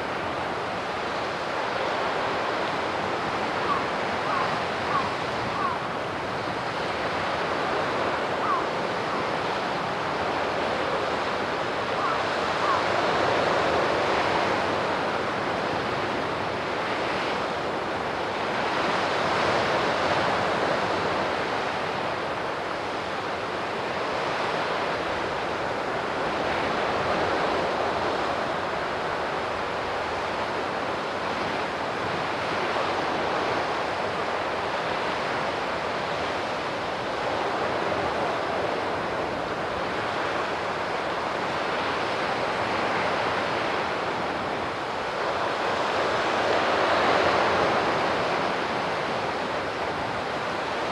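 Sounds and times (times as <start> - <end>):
sea surf washing onto shore: 0.0 - 50.9.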